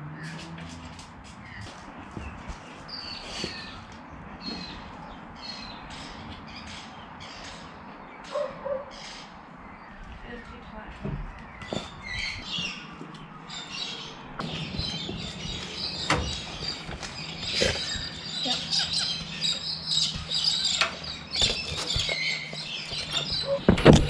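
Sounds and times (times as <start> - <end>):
birds chirping and squawking: 0.0 - 24.0
steady low hum: 0.0 - 24.0
sharp clicks and knocks: 14.4 - 24.0.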